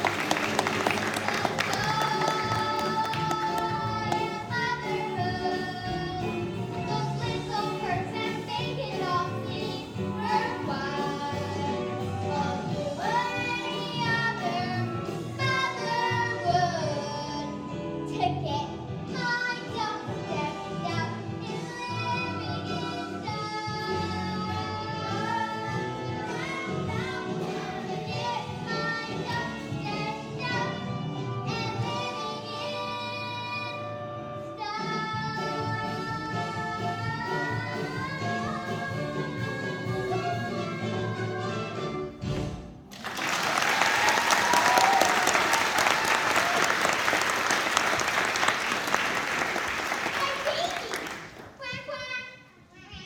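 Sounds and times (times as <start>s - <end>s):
audience applause: 0.0s - 4.2s, 42.9s - 51.6s
young voices singing together: 0.0s - 17.5s
recorded backing music: 0.0s - 51.8s.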